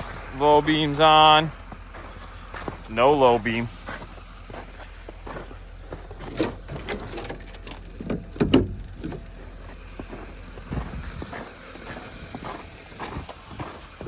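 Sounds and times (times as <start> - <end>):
low steady hum: 0.0 - 14.0
knocks and thumps: 6.2 - 9.3.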